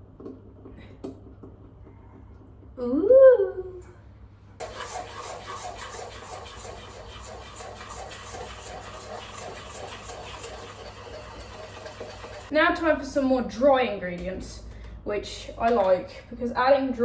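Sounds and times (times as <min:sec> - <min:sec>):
batter stirred in mixing bowl: 0:04.6 - 0:12.5.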